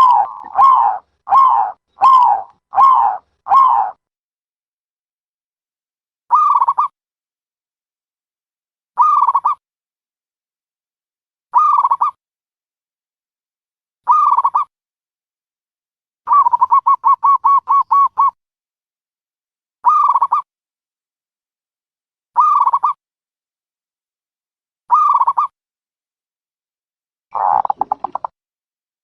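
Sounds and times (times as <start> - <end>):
dove cooing: 0.0 - 4.0, 27.4 - 28.3.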